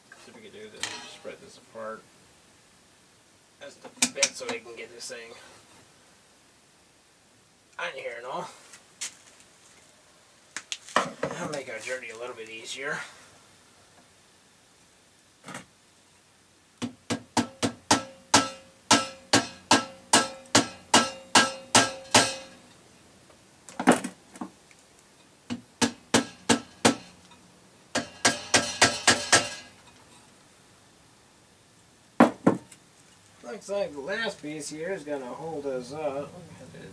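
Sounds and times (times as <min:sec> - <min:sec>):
hammer tapping on metal: 0:16.8 - 0:22.6, 0:25.5 - 0:27.2, 0:27.9 - 0:29.7.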